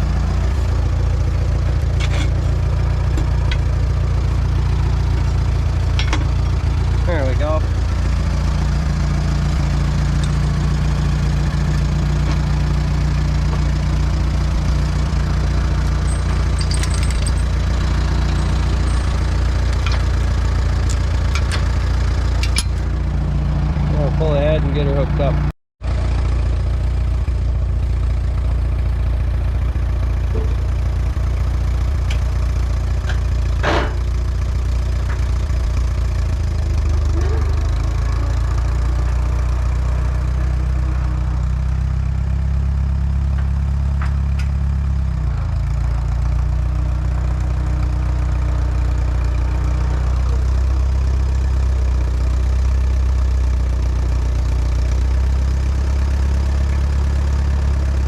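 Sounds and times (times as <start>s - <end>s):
tractor engine idling: 0.0s - 58.0s.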